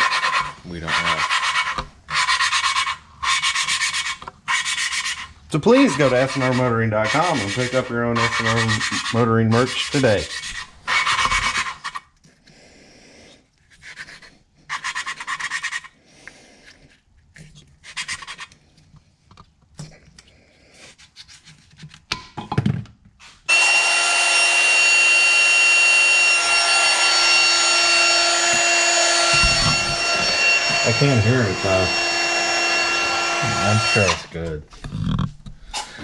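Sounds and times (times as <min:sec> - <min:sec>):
mechanical whine: 0:23.5 - 0:34.3.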